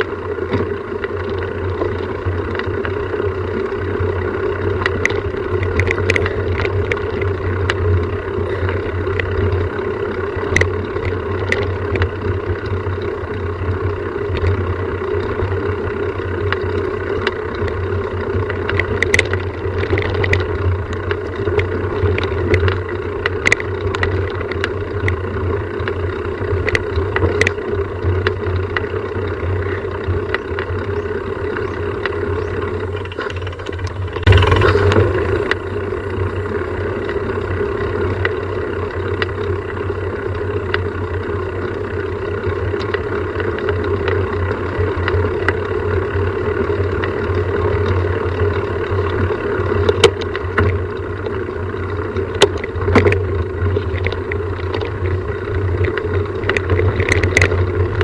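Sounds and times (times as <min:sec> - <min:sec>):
vehicle engine droning: 0:00.0 - 0:58.0
rush of noise: 0:30.8 - 0:37.9.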